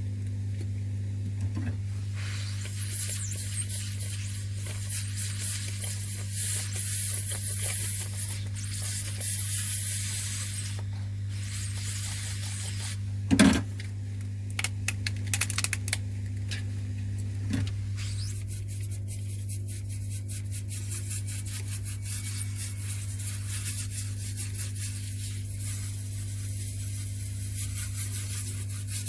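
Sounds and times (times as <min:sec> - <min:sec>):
electrical hum: 0:00.0 - 0:29.0
airy hiss: 0:01.9 - 0:13.0, 0:19.4 - 0:29.0.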